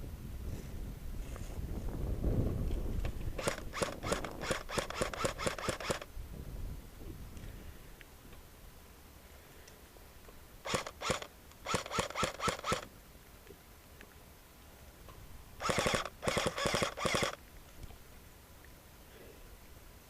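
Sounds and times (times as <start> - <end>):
airsoft guns firing bursts: 3.4 - 6.1, 10.6 - 12.9, 15.6 - 17.4.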